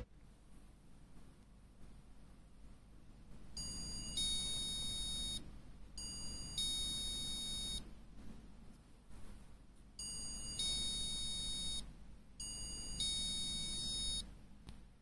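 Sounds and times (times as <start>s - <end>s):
electronic door chime: 3.6s - 5.4s, 6.0s - 7.8s, 10.0s - 11.8s, 12.4s - 14.2s.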